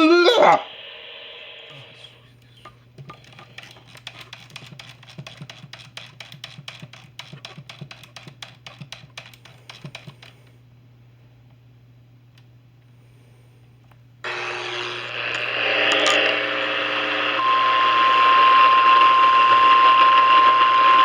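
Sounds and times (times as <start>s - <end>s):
keyboard typing clicks: 3.1s - 10.4s
low hum: 14.2s - 21.0s.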